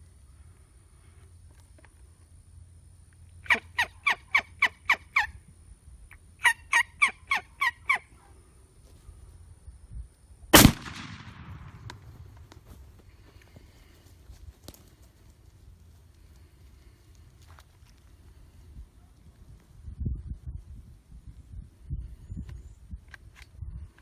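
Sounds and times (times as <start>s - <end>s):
turkey yelps: 3.5s - 5.3s, 6.4s - 8.1s
shotgun blast echoing: 10.6s - 12.3s.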